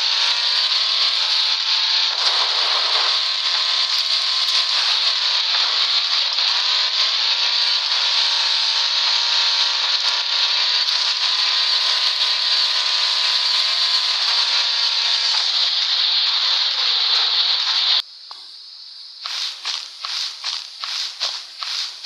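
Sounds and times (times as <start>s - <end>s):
vehicle engine running: 0.0s - 18.0s, 19.2s - 22.0s
strong hiss: 19.2s - 22.0s.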